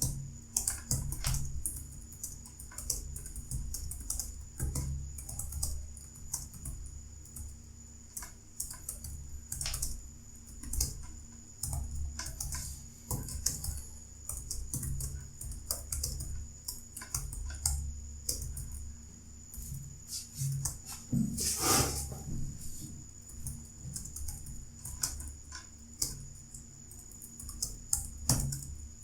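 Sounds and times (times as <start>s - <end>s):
computer keyboard typing: 0.6s - 7.5s, 8.6s - 18.8s, 23.3s - 25.4s, 26.0s - 28.7s.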